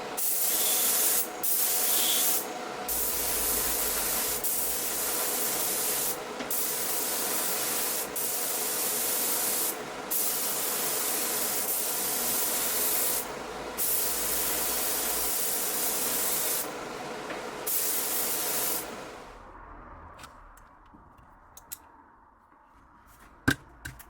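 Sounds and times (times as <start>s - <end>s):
spray gun air hiss: 0.1s - 19.3s.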